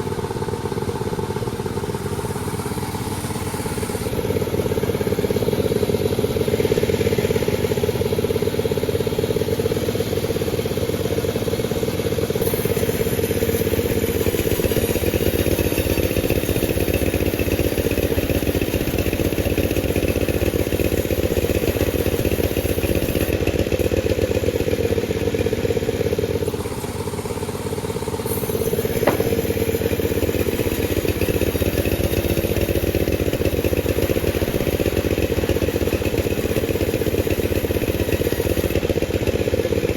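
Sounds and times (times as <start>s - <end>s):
chainsaw sawing through log: 12.4s - 24.6s, 28.2s - 39.3s.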